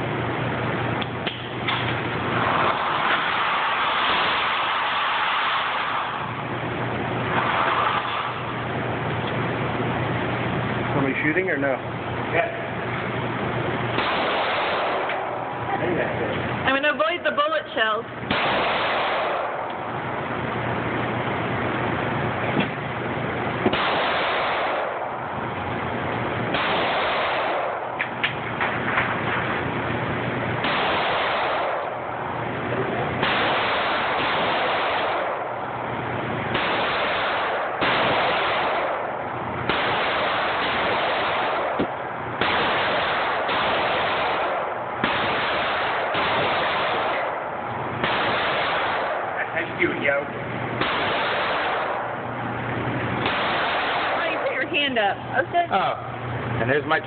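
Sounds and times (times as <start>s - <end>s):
continuous gunfire: 2.4s - 6.4s, 7.3s - 8.5s, 13.9s - 15.4s, 18.2s - 19.8s, 23.6s - 25.2s, 26.5s - 29.0s, 30.5s - 32.2s, 33.1s - 35.6s, 36.3s - 49.4s, 50.8s - 52.2s, 53.2s - 54.6s
sharp gunshot cracks: 2.5s - 6.4s, 14.0s - 15.4s, 18.3s - 19.8s, 23.6s - 25.1s, 26.5s - 29.1s, 30.6s - 32.0s, 33.2s - 35.5s, 36.5s - 49.4s, 50.8s - 52.2s, 53.2s - 54.5s.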